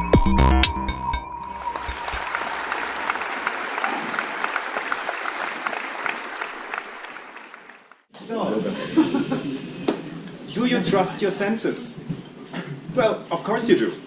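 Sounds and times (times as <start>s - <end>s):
audience clapping: 1.4s - 8.1s.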